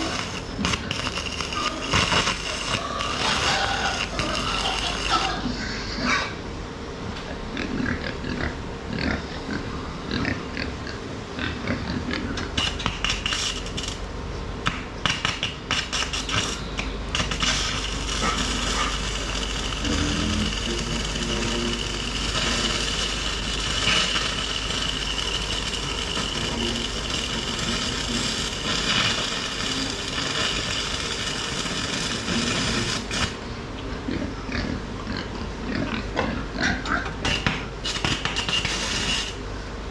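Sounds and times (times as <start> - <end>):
arc welding crackling: 0.0 - 5.6, 12.3 - 33.5, 37.2 - 39.5
pigs grunting: 0.0 - 6.4, 7.3 - 12.6, 17.4 - 29.1, 33.9 - 37.5.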